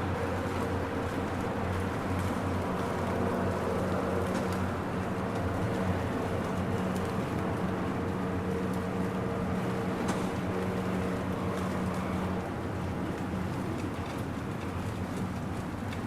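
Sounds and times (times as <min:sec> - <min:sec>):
continuous low hum: 0:00.0 - 0:16.0
steady rain: 0:00.0 - 0:16.0
faint ticks: 0:13.1 - 0:16.0.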